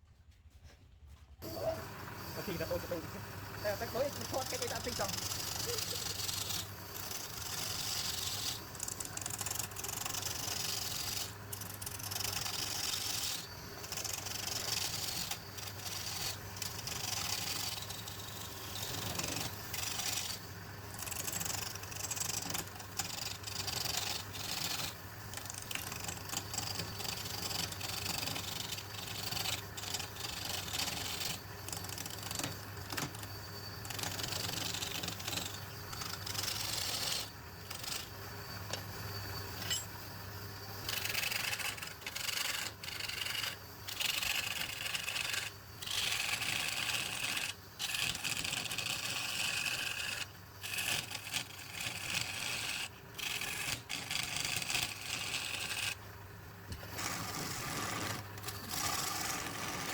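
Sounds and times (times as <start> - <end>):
tool scraping spinning wood: 0.4 - 59.9
wood lathe humming: 1.4 - 22.0, 33.9 - 38.8.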